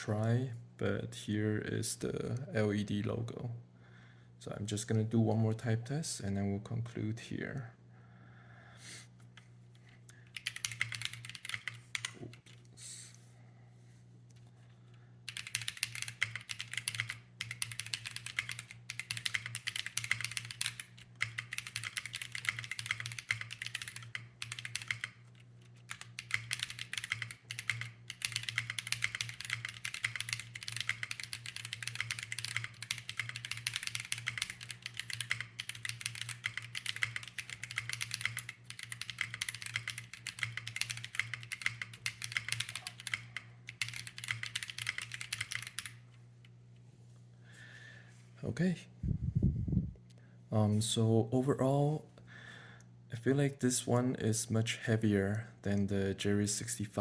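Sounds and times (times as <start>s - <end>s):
faint low hum: 0.0s - 57.0s
mechanical keyboard typing: 10.4s - 12.6s, 15.3s - 46.0s.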